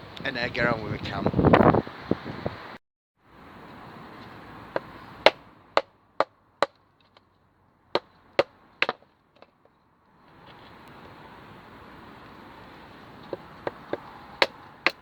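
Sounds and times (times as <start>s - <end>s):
wood being chopped: 4.8s - 6.8s, 8.0s - 9.5s, 13.3s - 15.0s.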